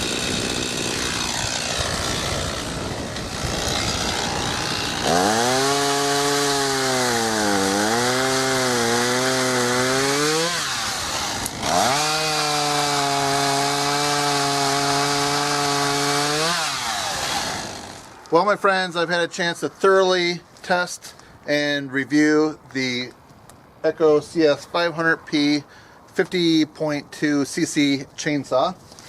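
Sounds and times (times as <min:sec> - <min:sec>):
chainsaw revving through wood: 0:00.0 - 0:18.3.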